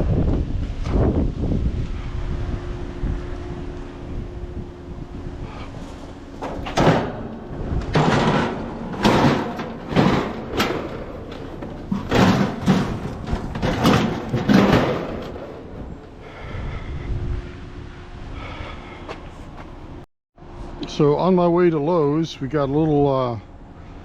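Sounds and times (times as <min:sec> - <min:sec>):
scrap metal clanking on trailer: 0:05.5 - 0:16.5.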